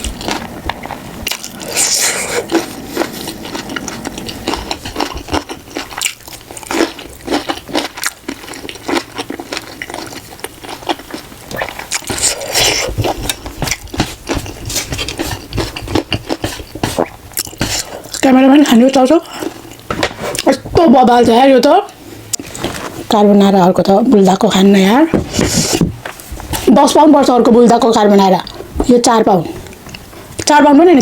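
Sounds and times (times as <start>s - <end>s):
chewing and biting: 0.0s - 18.2s.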